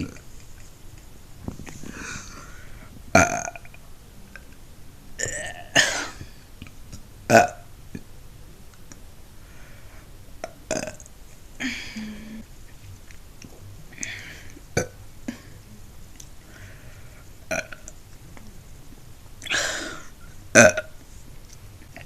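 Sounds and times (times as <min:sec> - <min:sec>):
woman burping: 0:03.2 - 0:03.7, 0:05.2 - 0:06.3, 0:07.3 - 0:07.6, 0:10.7 - 0:11.0, 0:19.4 - 0:20.9.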